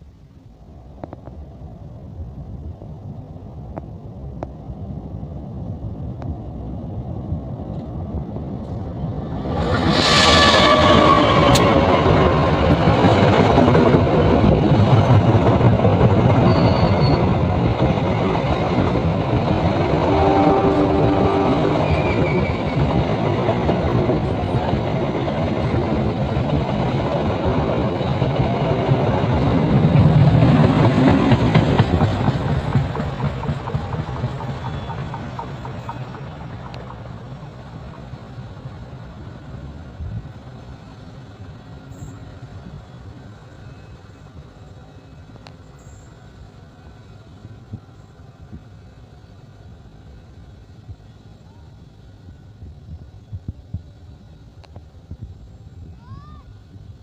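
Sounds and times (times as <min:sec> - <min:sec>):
train rumbling past on rails: 0:00.0 - 0:57.0.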